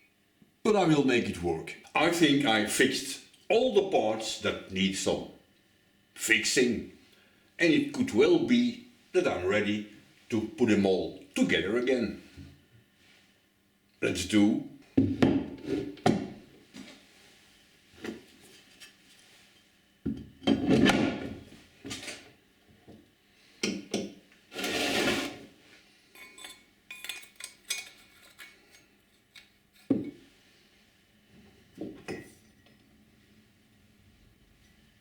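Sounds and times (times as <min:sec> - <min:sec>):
metal sliding scrape: 0:24.5 - 0:25.5.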